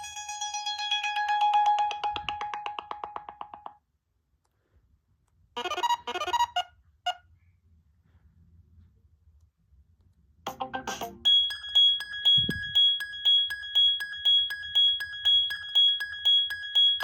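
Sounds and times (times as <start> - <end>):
phone ringtone notes: 10.8 - 17.0
high chiming tone beeping: 11.2 - 17.0.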